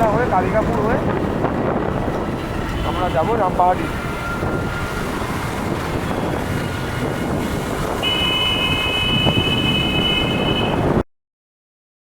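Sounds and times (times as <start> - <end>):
motorcycle engine and road noise: 0.0 - 11.0
wind buffeting microphone: 0.0 - 11.0
high-pitched horn: 8.0 - 10.9.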